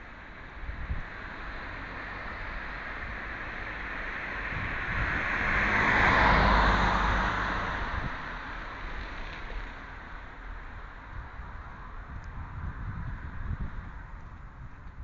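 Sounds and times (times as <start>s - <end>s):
car driving past: 4.2s - 9.8s.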